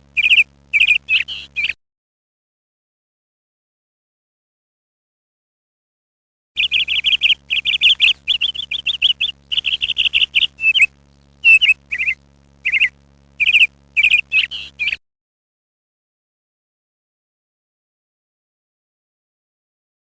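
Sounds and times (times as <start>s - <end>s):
bird chirping high notes: 6.6s - 15.0s.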